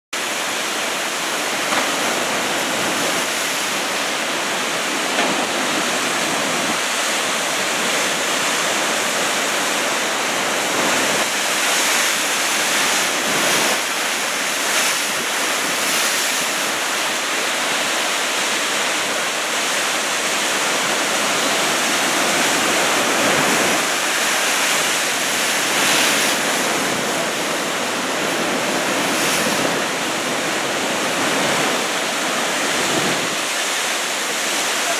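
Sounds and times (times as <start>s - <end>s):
heavy surf breaking: 0.2s - 34.9s
wind on microphone: 20.7s - 33.4s.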